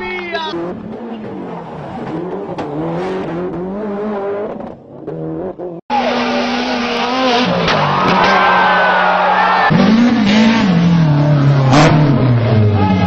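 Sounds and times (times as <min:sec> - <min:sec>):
rally car engine revving: 0:00.0 - 0:13.0.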